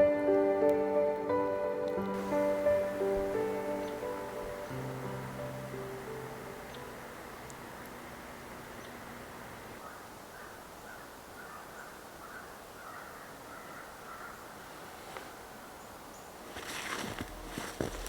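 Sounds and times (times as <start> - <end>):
steady outdoor hiss: 0.0 - 18.0
footsteps crunching in snow: 2.1 - 6.9, 16.3 - 18.0
short bird calls: 2.5 - 16.2.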